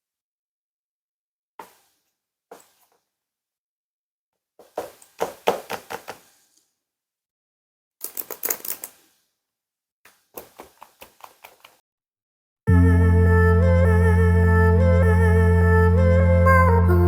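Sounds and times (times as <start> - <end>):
rapid clicks and knocks of plastic parts: 4.6 - 6.3, 10.3 - 11.8.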